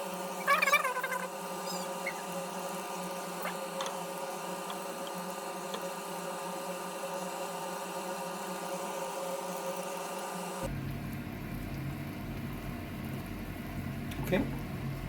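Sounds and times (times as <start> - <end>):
microwave oven humming: 0.0 - 15.0
high wavering squeak: 0.3 - 2.4.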